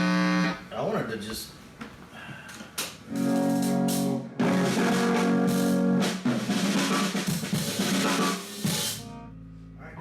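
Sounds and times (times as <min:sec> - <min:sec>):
held guitar chords: 0:03.1 - 0:06.3
drum kit: 0:03.1 - 0:09.2.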